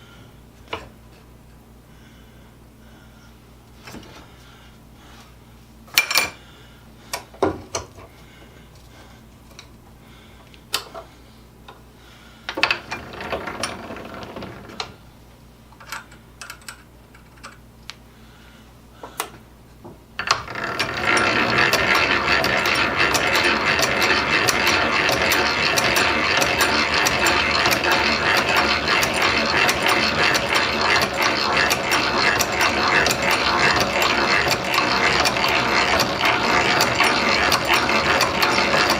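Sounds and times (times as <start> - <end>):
tools clicking and knocking: 15.8 - 17.6
hand drill gears clicking: 20.2 - 38.9.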